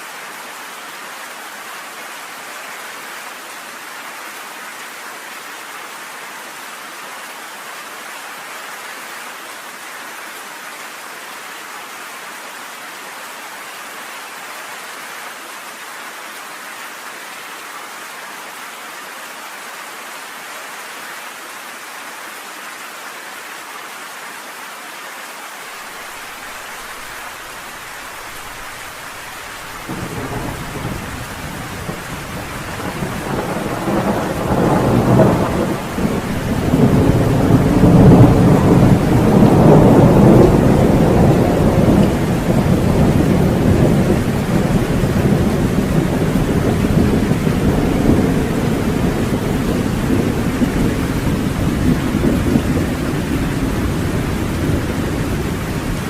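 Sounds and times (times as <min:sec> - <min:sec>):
rain hissing: 0:25.7 - 0:56.0
thunder rumbling: 0:28.1 - 0:56.0.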